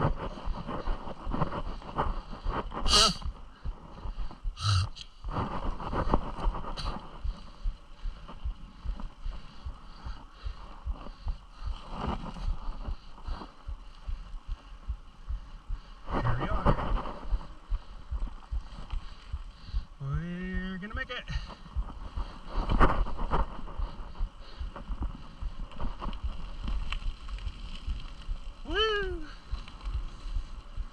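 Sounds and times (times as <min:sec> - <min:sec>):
wind on microphone: 0:00.0 - 0:09.8
person calling out: 0:02.9 - 0:03.3, 0:04.6 - 0:04.9, 0:28.7 - 0:29.3.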